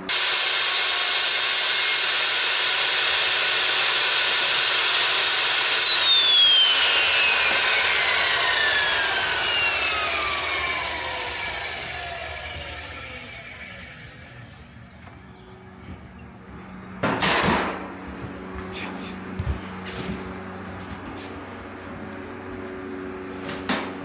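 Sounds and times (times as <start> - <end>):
power tool motor whining: 0.0 - 14.7.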